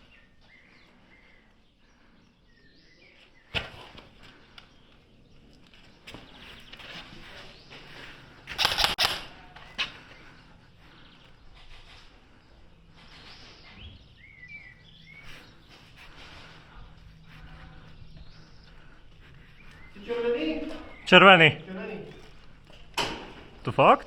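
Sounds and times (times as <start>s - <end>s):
low outdoor background: 0.0s - 24.0s
airsoft gunfire: 8.6s - 9.3s.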